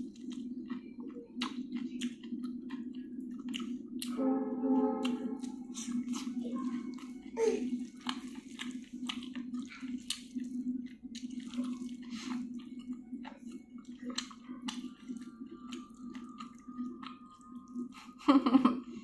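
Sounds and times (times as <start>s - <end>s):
wet chewing mouth sounds: 0.0s - 4.1s, 5.0s - 18.2s
low hum of moving train: 4.1s - 6.9s.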